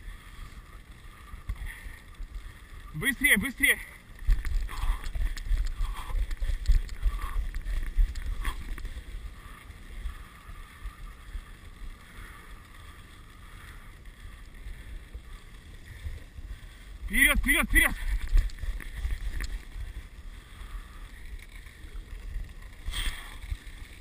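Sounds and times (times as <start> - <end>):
sled runners hissing over snow: 0.0 - 24.0
wind buffeting microphone: 4.2 - 9.4.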